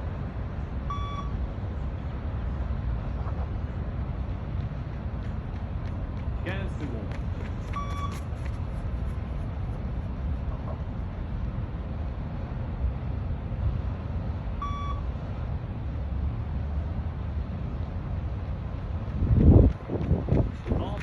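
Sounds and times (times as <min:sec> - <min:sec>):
steady low rumble: 0:00.0 - 0:21.0
short electronic beeps: 0:00.9 - 0:01.4, 0:07.7 - 0:08.2, 0:14.6 - 0:15.1.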